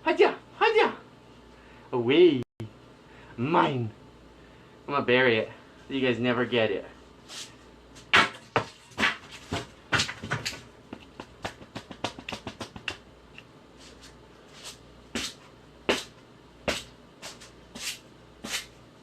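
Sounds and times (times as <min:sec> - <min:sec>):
stick knocking and scratching: 0:08.1 - 0:14.0.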